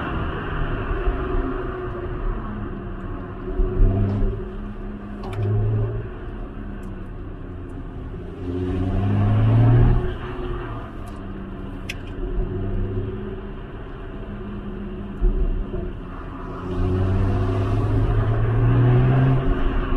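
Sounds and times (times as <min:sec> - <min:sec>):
car engine revving: 0:07.8 - 0:19.9.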